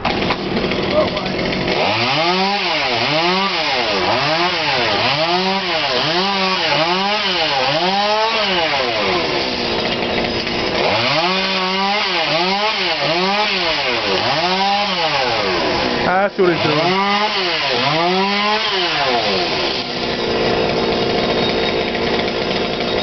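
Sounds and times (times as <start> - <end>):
chainsaw cutting tree: 0.0 - 23.0.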